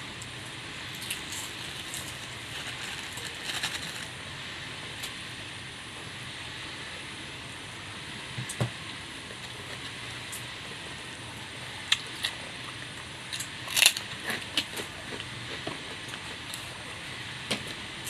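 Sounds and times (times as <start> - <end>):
person chewing: 0.8 - 4.1.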